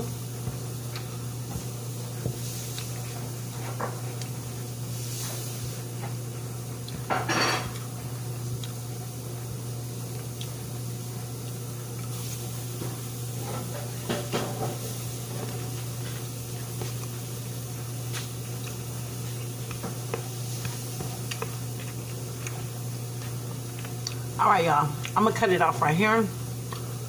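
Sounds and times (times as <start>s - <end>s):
steady low hum: 0.0s - 27.0s
dishes and utensils clinking: 7.1s - 7.8s.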